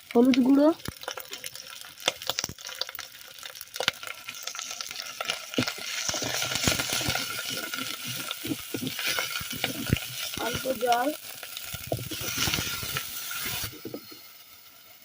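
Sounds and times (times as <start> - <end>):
paste sizzling in oil: 0.0 - 15.0
spoon scraping a pan: 4.9 - 10.8, 11.6 - 14.2.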